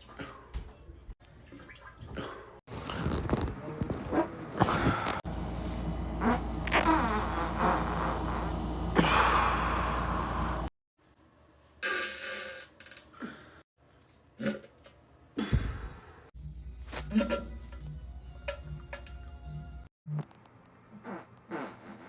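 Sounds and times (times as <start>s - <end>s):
man farting: 6.2s - 9.1s, 20.9s - 22.0s.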